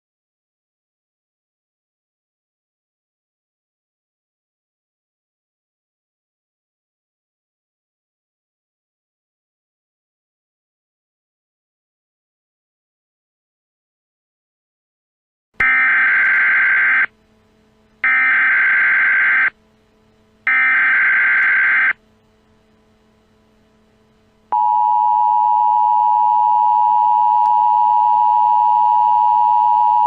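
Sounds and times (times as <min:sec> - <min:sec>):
digital data screech bursts: 0:15.6 - 0:17.1, 0:20.5 - 0:22.0
two-tone attention signal: 0:24.5 - 0:30.0.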